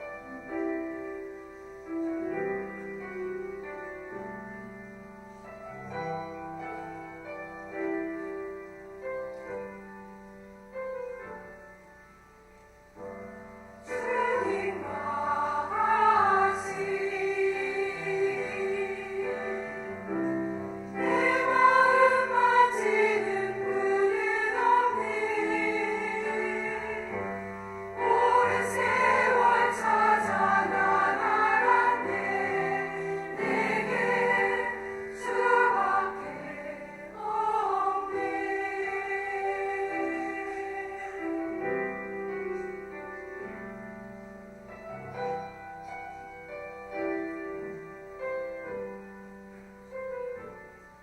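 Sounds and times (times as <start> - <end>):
piano accompaniment: 0.0 - 51.0
women's choir singing a hymn: 13.2 - 43.6.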